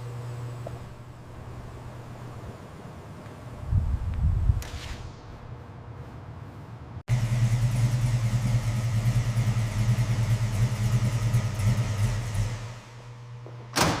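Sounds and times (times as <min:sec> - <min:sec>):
car engine rumbling: 0:07.1 - 0:13.1.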